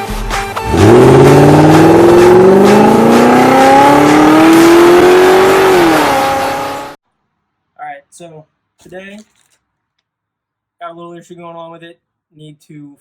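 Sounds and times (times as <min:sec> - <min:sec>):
car engine accelerating hard: 0:00.6 - 0:07.0.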